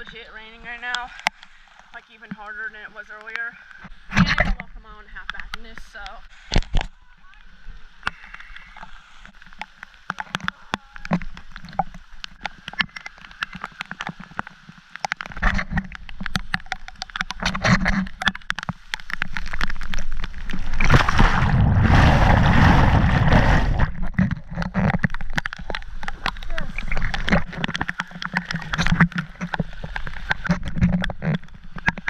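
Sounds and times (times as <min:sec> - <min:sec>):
rain ticking on camera: 0:06.8 - 0:21.0, 0:24.1 - 0:32.0.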